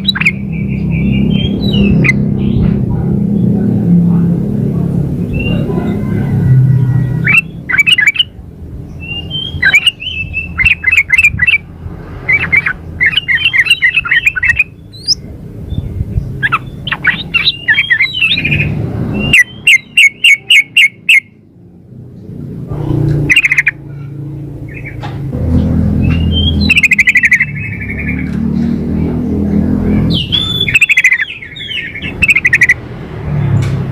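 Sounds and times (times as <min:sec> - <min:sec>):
bird bubbly chattering calls: 0:00.0 - 0:02.2, 0:07.2 - 0:08.3, 0:12.3 - 0:15.2, 0:16.3 - 0:18.7, 0:23.2 - 0:23.8, 0:26.2 - 0:28.2, 0:30.1 - 0:32.8.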